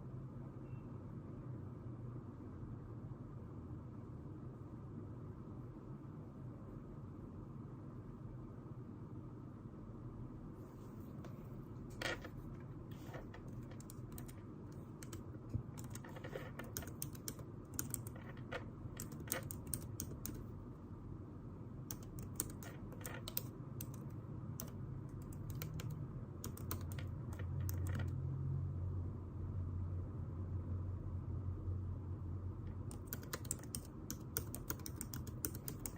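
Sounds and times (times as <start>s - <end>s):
steady low hum: 1.1s - 35.9s
typing on computer keyboard: 11.9s - 20.5s, 21.9s - 28.2s, 32.7s - 35.9s.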